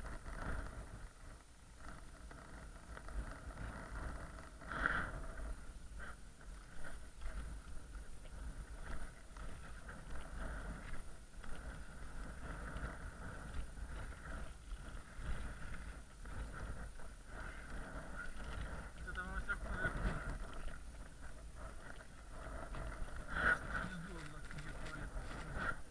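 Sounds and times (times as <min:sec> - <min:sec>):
strong gusting wind on microphone: 0:00.0 - 0:25.9.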